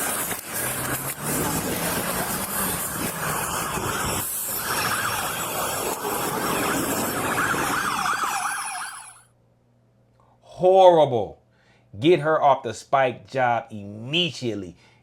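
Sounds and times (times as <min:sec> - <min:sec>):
road and wind noise: 0:00.0 - 0:08.8
police siren yelping: 0:01.0 - 0:09.2.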